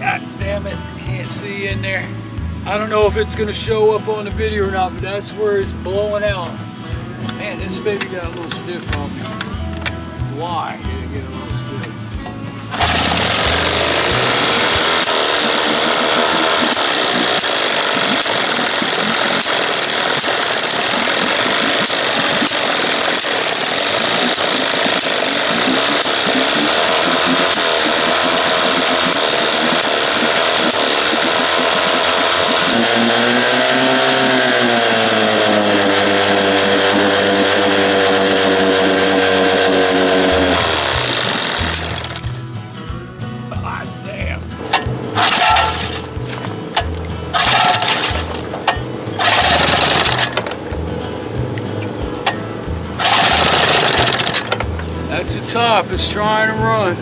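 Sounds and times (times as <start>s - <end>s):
small gasoline engine running rough: 12.6s - 42.4s, 44.6s - 57.0s.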